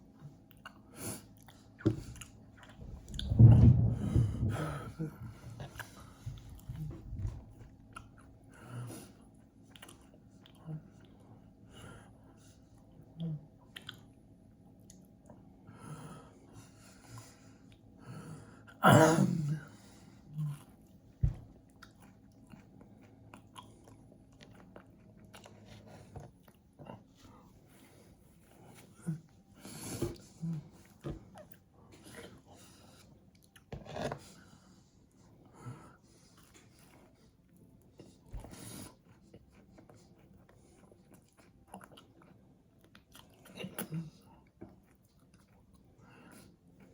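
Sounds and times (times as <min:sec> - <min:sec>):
person breathing: 0:03.8 - 0:06.9
person chewing: 0:38.0 - 0:45.9.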